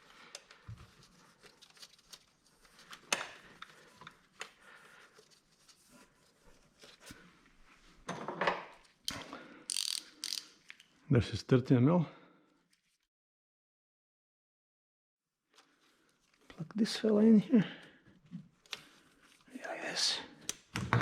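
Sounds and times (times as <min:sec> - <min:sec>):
rustling handling noise: 0:00.5 - 0:07.9.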